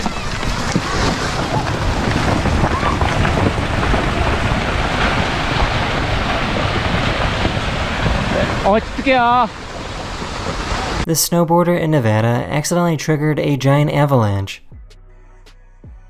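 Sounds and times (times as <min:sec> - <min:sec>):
wind buffeting microphone: 0:00.0 - 0:11.1.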